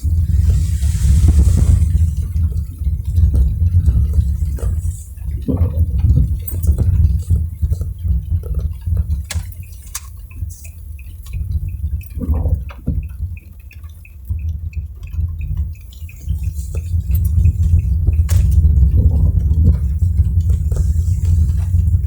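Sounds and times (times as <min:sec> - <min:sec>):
road and engine rumble: 0:00.0 - 0:11.0, 0:15.6 - 0:22.0
raindrops tapping: 0:00.0 - 0:22.0.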